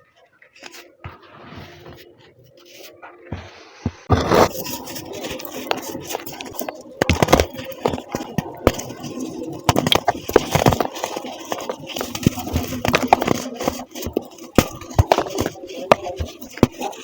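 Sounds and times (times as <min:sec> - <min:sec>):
baking soda crunching and crackling: 0:04.0 - 0:17.0.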